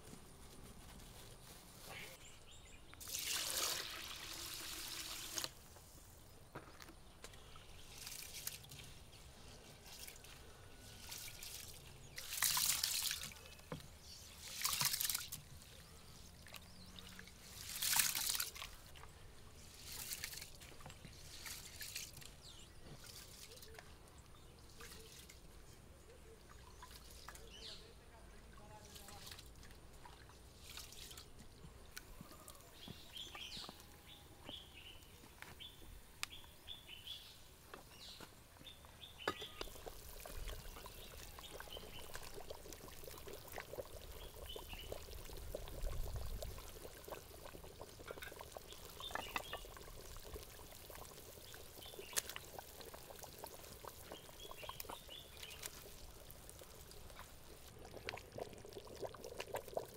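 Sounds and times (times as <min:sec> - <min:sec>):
water running and splashing: 0:03.0 - 0:05.6, 0:10.9 - 0:13.6, 0:14.3 - 0:15.6, 0:16.4 - 0:19.0, 0:39.4 - 0:59.9.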